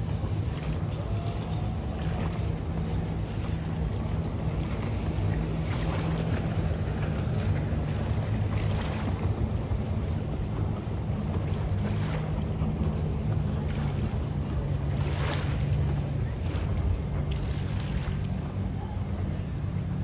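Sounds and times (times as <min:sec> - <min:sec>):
boat engine running: 0:00.0 - 0:20.0
wind buffeting microphone: 0:00.0 - 0:20.0.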